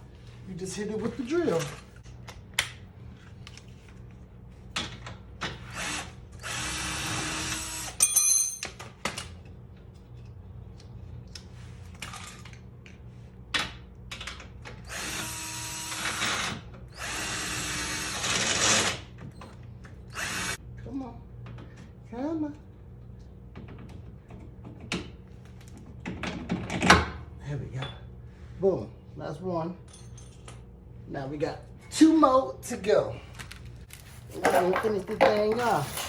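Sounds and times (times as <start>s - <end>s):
cordless drill spinning: 5.7s - 8.0s, 14.9s - 18.9s, 20.1s - 20.6s.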